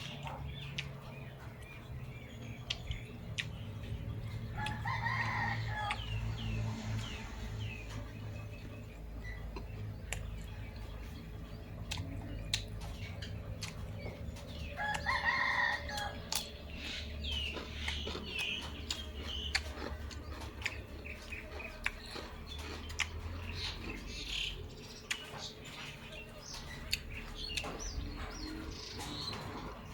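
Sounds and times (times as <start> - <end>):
low steady hum: 0.0 - 29.9
small birds chirping: 0.0 - 29.9
rooster crowing: 4.6 - 6.2, 14.8 - 16.2.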